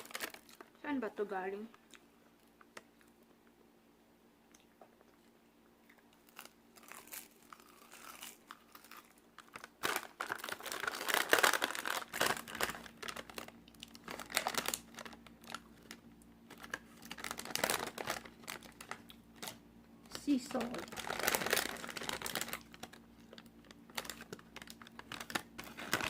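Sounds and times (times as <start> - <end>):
plastic snack packet crinkling: 0.0 - 0.8, 6.0 - 26.0.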